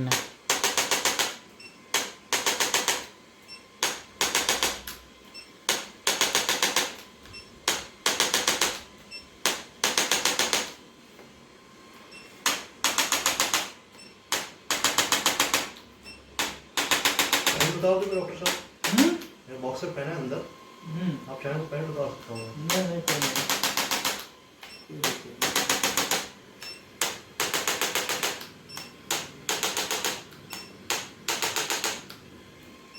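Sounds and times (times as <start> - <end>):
rapid mechanical clicking: 0.1 - 1.4, 2.0 - 3.1, 3.8 - 5.0, 5.7 - 7.0, 12.4 - 13.7, 14.3 - 15.8, 16.4 - 19.1, 25.0 - 32.2.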